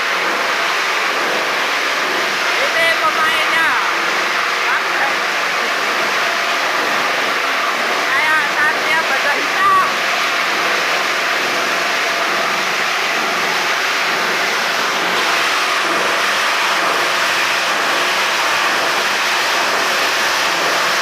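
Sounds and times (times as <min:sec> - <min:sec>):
plastic granulator grinding: 0:00.0 - 0:21.0.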